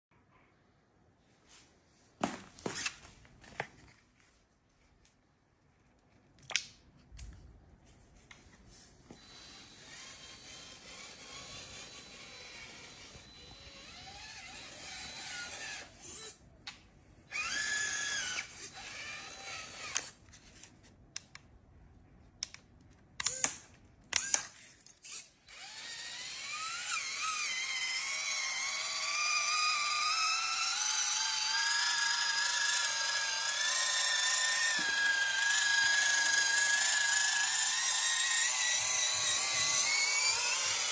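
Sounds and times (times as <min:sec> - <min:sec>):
small electric motor whining: 0:09.1 - 0:16.4, 0:17.3 - 0:20.2, 0:24.2 - 0:40.9.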